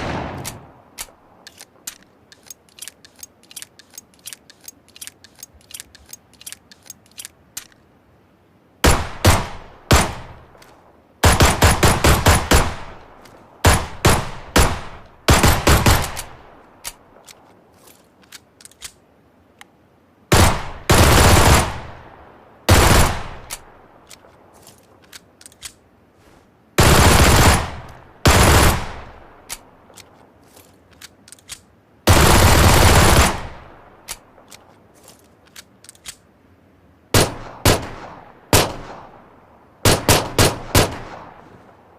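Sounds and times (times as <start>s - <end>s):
gunshots: 0.0s - 0.8s, 8.8s - 10.5s, 11.2s - 13.0s, 13.6s - 16.4s, 37.2s - 39.2s, 39.8s - 41.4s
mechanical clicks: 0.4s - 7.8s
automatic gunfire bursts: 11.2s - 12.8s, 13.6s - 16.2s, 20.3s - 21.8s, 26.8s - 29.0s, 32.1s - 33.6s, 39.8s - 41.1s.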